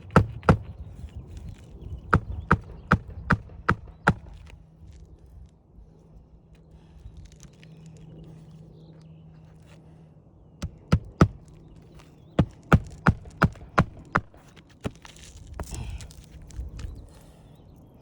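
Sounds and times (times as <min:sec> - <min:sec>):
hammer blows on shingle roof: 0:00.0 - 0:01.1, 0:02.0 - 0:04.5, 0:10.6 - 0:11.6, 0:12.4 - 0:15.0.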